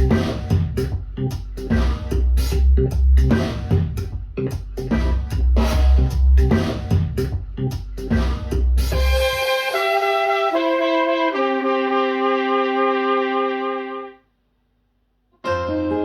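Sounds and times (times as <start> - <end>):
rock music over loudspeakers: 0.0 - 9.5
steady drum beat: 0.0 - 9.5
held bass notes: 0.0 - 14.0.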